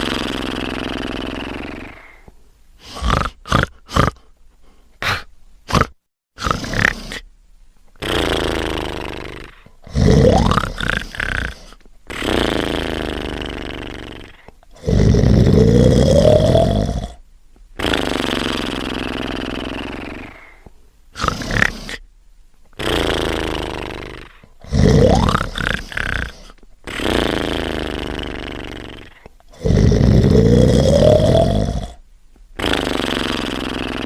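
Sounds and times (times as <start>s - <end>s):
breathy exhales: 0.0s - 3.2s, 3.9s - 5.3s, 8.0s - 17.1s, 17.8s - 22.0s, 22.8s - 31.9s
cartoon snoring: 0.0s - 4.4s, 5.0s - 7.3s, 8.0s - 17.2s, 17.8s - 22.0s, 22.8s - 32.0s, 32.6s - 34.0s.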